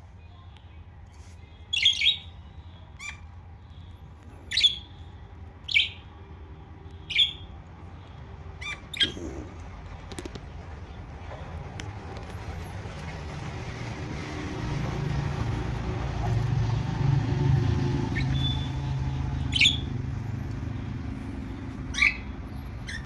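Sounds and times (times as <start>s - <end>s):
budgerigar chirps: 1.7s - 2.4s, 3.0s - 3.3s, 4.5s - 5.0s, 7.1s - 7.5s, 8.6s - 9.5s, 19.5s - 19.9s, 21.9s - 23.0s
low motor rumble: 2.4s - 23.0s.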